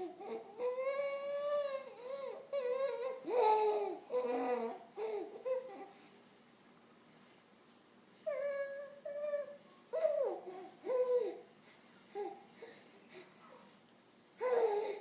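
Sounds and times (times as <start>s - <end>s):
baby babbling high-pitched: 8.3s - 11.4s.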